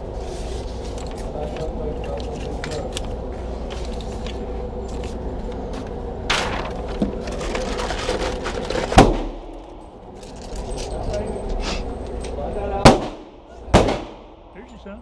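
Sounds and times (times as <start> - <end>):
steady background hum: 0.0 - 15.0
loud handgun shot: 12.8 - 14.4.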